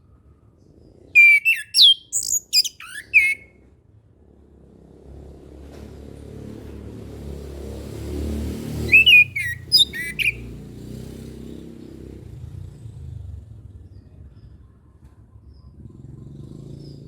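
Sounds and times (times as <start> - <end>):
thrush singing whistled notes: 1.2 - 3.5, 8.8 - 10.5.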